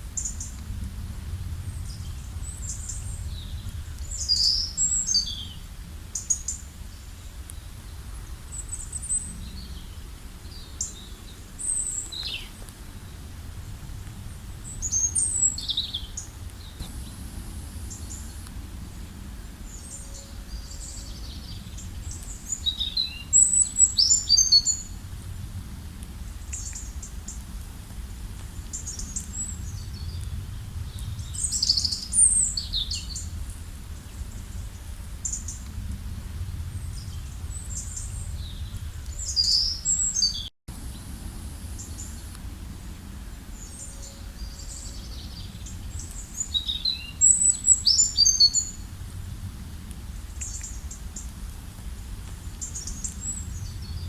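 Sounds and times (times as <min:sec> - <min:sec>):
low steady rumble: 0:00.0 - 0:24.0, 0:24.7 - 0:46.5, 0:48.6 - 0:54.0
songbirds chirping and trilling: 0:01.6 - 0:13.3, 0:14.2 - 0:25.0, 0:36.8 - 0:48.9.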